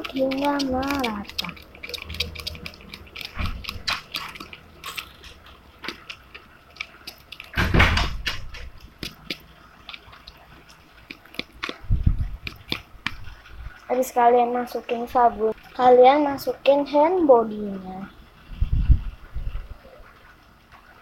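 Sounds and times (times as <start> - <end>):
sticky mixture squelching in bowl: 0.0 - 17.6
thump: 7.6 - 8.6.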